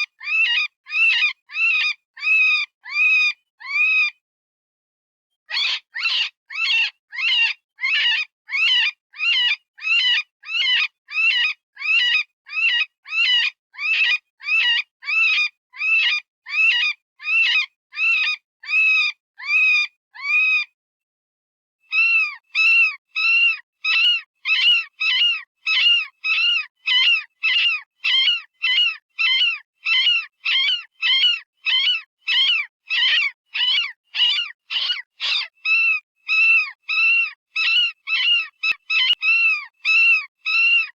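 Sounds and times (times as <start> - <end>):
synthesized rabbit distress squeals: 5.5 - 8.8, 21.9 - 40.9.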